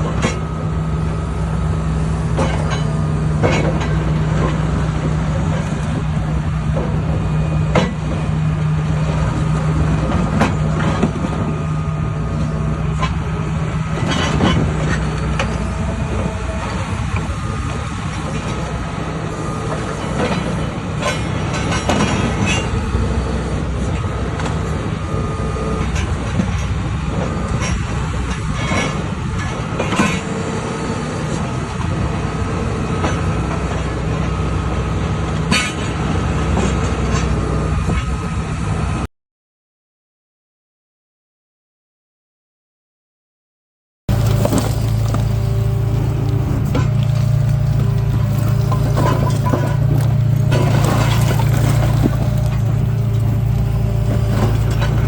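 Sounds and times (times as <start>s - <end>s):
excavator diesel engine: 0.0s - 39.1s, 44.1s - 55.0s
metal clanking and scraping: 44.1s - 55.0s.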